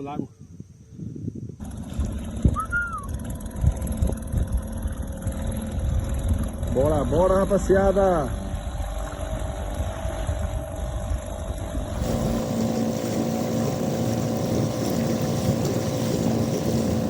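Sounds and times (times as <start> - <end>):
wind noise: 0.0 - 6.7, 8.6 - 17.0
small boat motor running: 1.6 - 17.0
water noise: 8.5 - 17.0.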